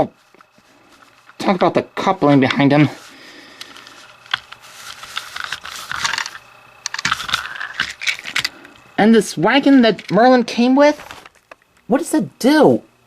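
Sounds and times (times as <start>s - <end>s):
plastic toy pieces clicking: 5.2s - 8.5s.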